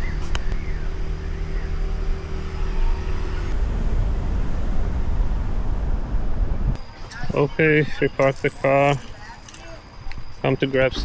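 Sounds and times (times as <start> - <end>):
car engine and road rumble: 0.0 - 6.9
faint hum: 0.0 - 11.0.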